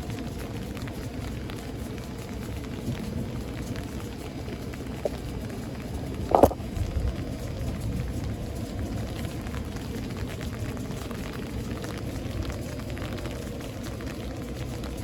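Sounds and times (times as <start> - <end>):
rain: 0.0 - 15.0
wind: 0.0 - 15.0.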